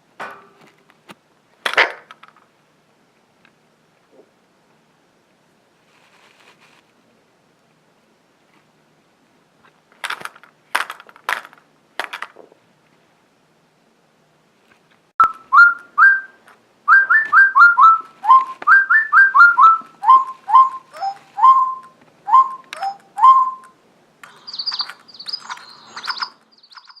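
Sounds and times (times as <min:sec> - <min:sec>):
bird-like whistling: 0:15.2 - 0:27.0
high quick twittering: 0:15.2 - 0:27.0.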